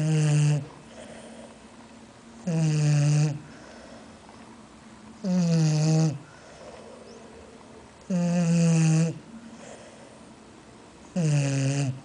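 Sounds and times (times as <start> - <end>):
dog snoring: 0.0 - 1.6, 2.4 - 4.0, 5.2 - 7.1, 8.1 - 10.2, 11.1 - 12.0.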